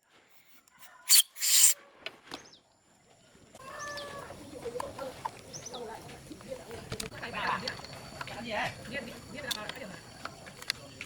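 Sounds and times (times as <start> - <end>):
birds chirping: 3.6 - 6.1.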